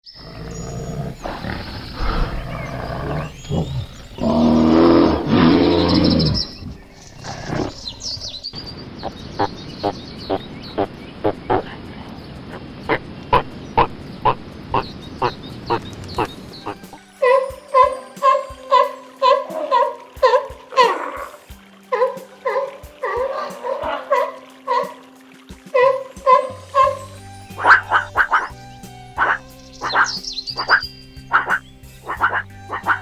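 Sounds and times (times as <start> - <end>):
big cat growling and roaring: 0.1 - 8.3
short sharp animal calls: 27.5 - 28.6, 29.2 - 33.0.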